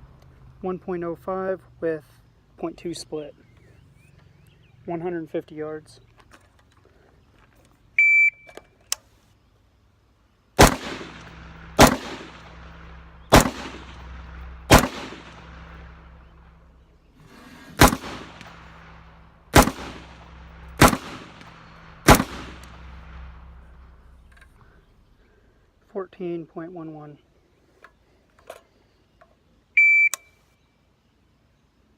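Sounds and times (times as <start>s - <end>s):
rifle shots with echo: 10.6s - 17.0s, 17.7s - 24.2s
shot timer beep: 29.8s - 30.3s.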